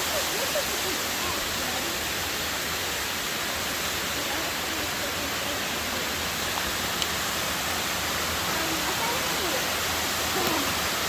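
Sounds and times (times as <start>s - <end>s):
rushing water hiss: 0.0s - 11.0s.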